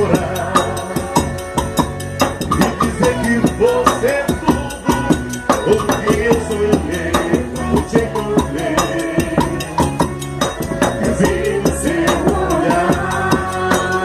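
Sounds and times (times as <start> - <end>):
quick percussion beat: 0.0 - 14.0
person singing: 10.8 - 14.0.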